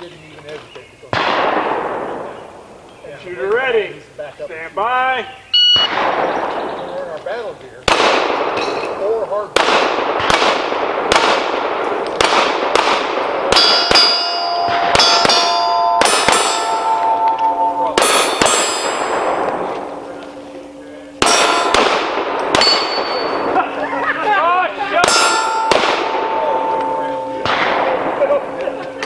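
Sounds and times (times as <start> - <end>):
pistol shots: 1.1 - 2.5, 5.8 - 7.0, 7.8 - 20.2, 21.2 - 23.7, 25.0 - 28.8
steel plate ringing: 13.2 - 29.0.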